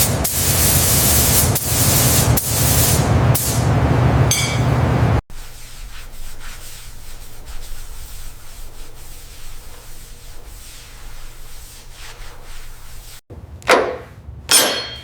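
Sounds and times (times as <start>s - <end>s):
sanding a surface: 5.3s - 13.2s.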